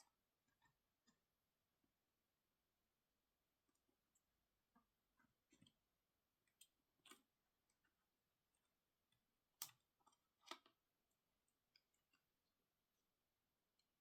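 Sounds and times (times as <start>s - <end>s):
small clicks and taps of tools: 9.6s - 10.8s.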